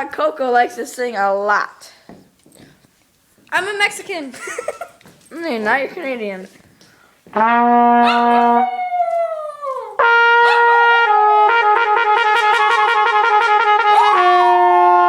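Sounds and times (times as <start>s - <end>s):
trumpet playing held notes: 7.3s - 8.7s, 10.0s - 15.0s
dog howling: 8.0s - 10.8s.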